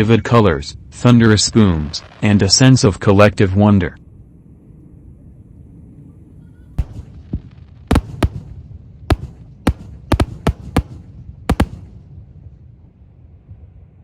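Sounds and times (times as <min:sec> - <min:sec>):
steady low rumble: 0:00.0 - 0:14.0
firework shells bursting: 0:06.8 - 0:12.1.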